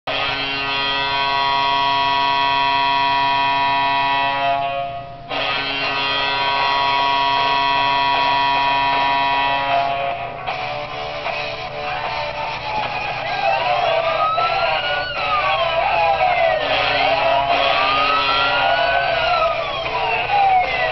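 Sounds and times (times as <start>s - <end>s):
ice hockey goal horn: 0.1s - 10.3s, 16.5s - 19.6s.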